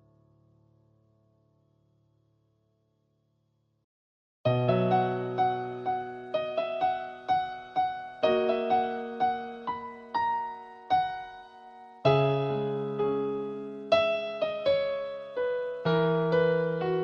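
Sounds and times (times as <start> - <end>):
solo piano chords: 4.5 - 17.0.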